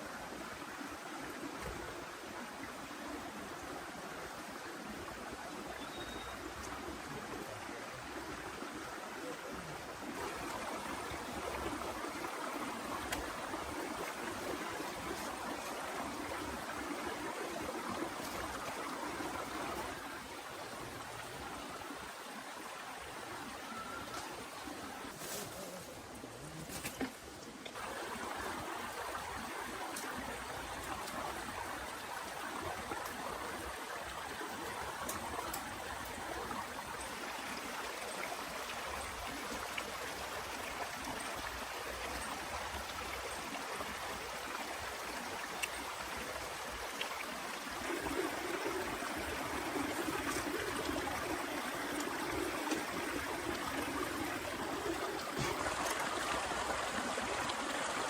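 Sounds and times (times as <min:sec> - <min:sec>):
running water rushing: 0:00.0 - 0:58.0.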